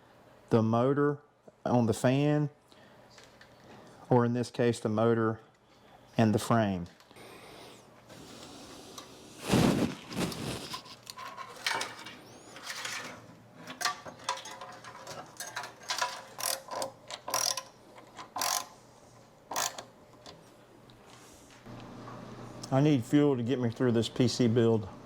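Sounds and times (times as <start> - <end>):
hardware clicks taps and rattles: 11.1 - 18.7.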